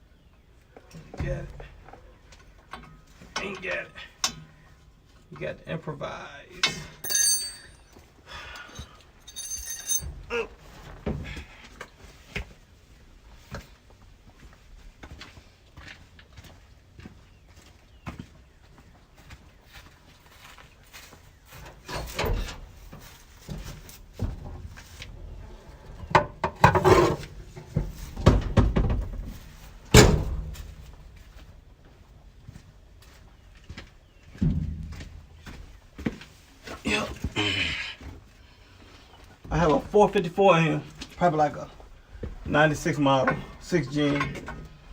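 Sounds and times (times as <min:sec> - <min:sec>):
hand tools clinking on metal: 0:06.7 - 0:10.3
metal scrapes: 0:26.7 - 0:27.3.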